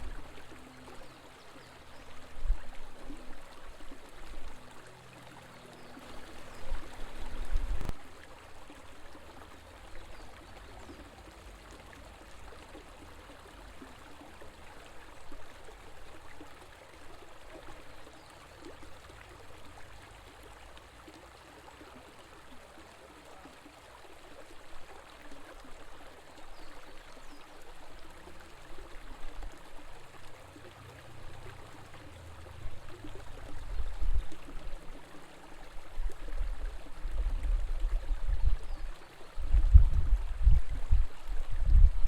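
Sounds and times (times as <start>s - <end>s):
river water flowing: 0.0s - 42.0s
low uneven rumble: 29.4s - 42.0s.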